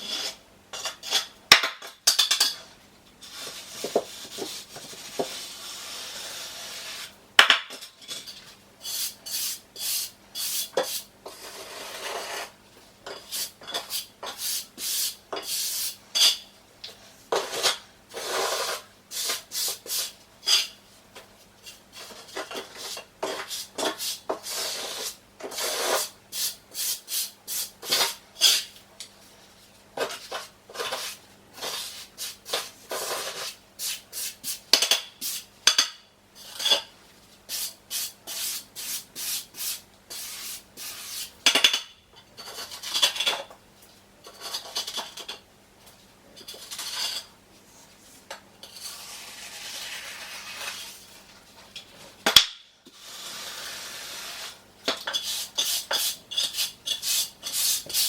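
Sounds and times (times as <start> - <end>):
trowel scraping mortar: 3.2 - 7.2, 8.8 - 16.4, 17.3 - 20.8, 21.7 - 28.7, 30.0 - 34.4, 37.5 - 41.4, 42.4 - 43.4, 48.6 - 51.2, 52.9 - 58.0.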